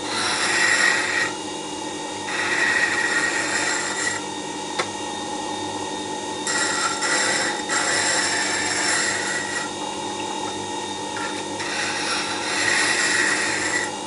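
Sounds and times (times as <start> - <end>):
rasping grinding on wet stone: 0.0 - 1.3, 2.3 - 4.2, 6.5 - 9.7, 11.2 - 13.9
sharpener motor humming: 0.0 - 1.4, 2.1 - 4.9, 6.4 - 14.0.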